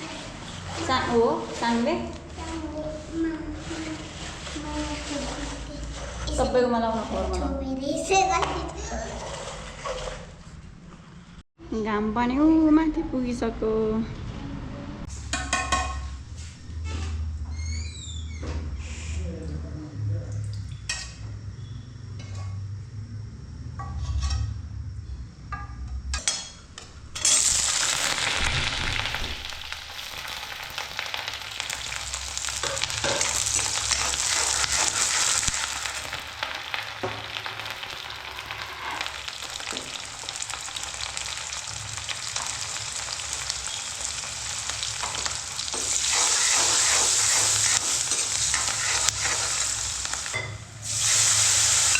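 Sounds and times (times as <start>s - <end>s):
stirring in pan: 0.0s - 7.4s, 29.2s - 51.9s
food sizzling in hot oil: 27.2s - 51.9s.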